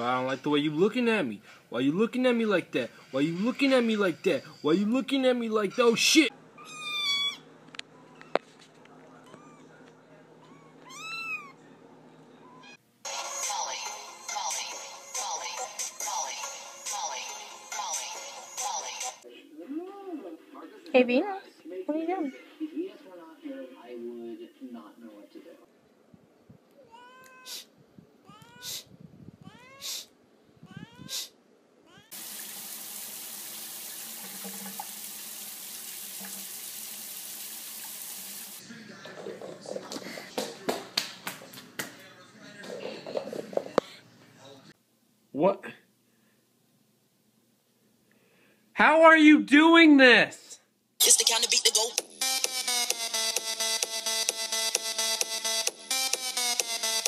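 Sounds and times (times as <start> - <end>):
cat meowing: 6.6 - 8.5, 9.2 - 9.8, 10.4 - 11.6, 12.4 - 12.8, 26.8 - 32.2
running water: 32.1 - 39.9.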